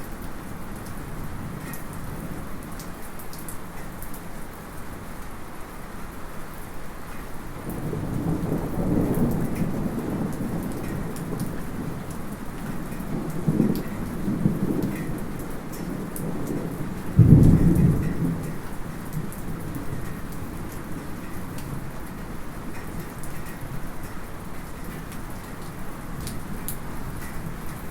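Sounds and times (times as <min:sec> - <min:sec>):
light rain falling: 0:00.0 - 0:27.9
thunder rumbling: 0:07.7 - 0:21.1
loud thunderclap: 0:16.0 - 0:18.5.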